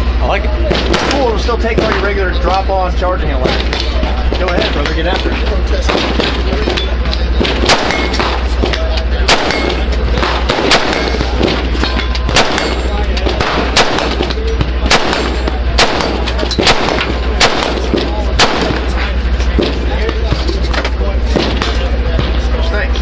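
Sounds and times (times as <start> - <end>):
rifle shots: 0.7 - 2.2, 3.4 - 20.2
faint distant gunshots: 3.4 - 20.4.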